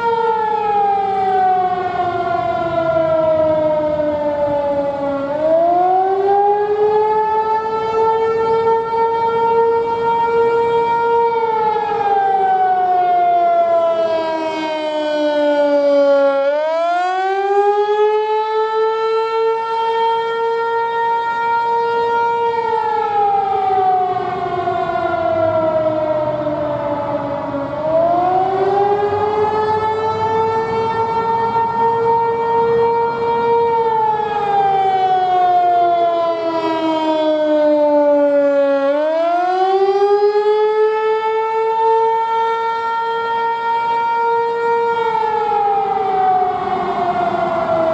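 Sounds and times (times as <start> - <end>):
warning siren wailing: 0.0 - 47.9.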